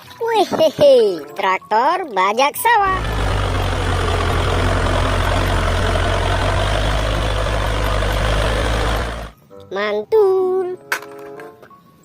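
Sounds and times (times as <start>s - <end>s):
heavy engine idling: 2.8s - 9.3s.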